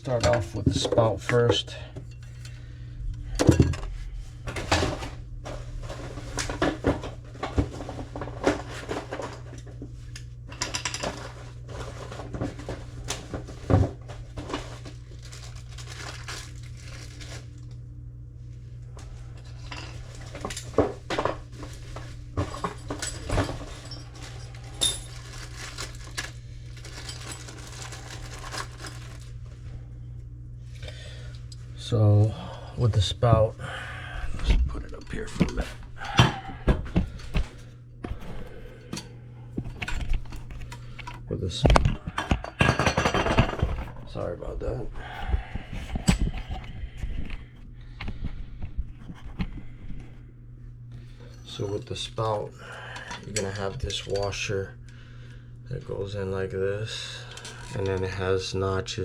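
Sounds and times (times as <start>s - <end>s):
steady low hum: 0.0s - 59.0s
metal parts clinking and rattling: 22.0s - 29.2s.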